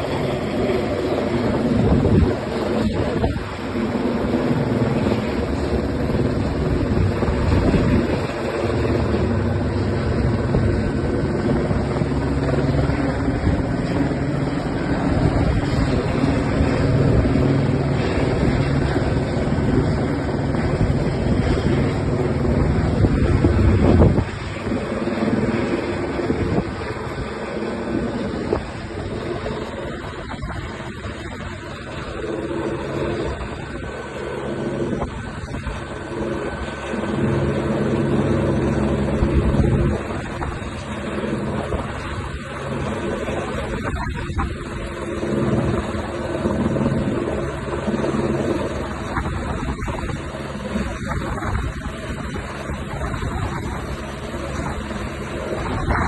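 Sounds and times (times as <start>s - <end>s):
helicopter engine and rotor: 0.0s - 56.0s
wind buffeting microphone: 0.0s - 56.0s.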